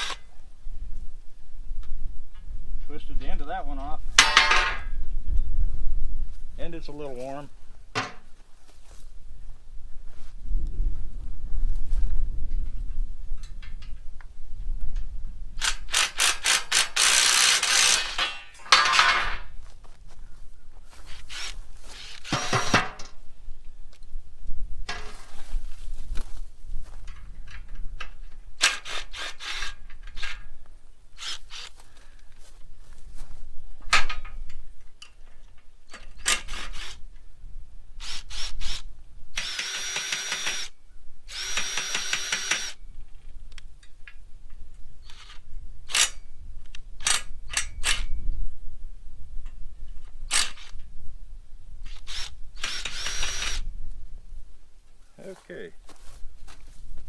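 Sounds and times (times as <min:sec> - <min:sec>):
power drill running: 0:00.0 - 0:00.2, 0:15.6 - 0:18.3, 0:21.1 - 0:23.0, 0:28.7 - 0:30.3, 0:31.2 - 0:31.7, 0:36.5 - 0:37.0, 0:38.0 - 0:42.8, 0:51.9 - 0:53.6
metal clicks and clanks: 0:04.2 - 0:04.9, 0:15.0 - 0:19.6, 0:22.0 - 0:23.2.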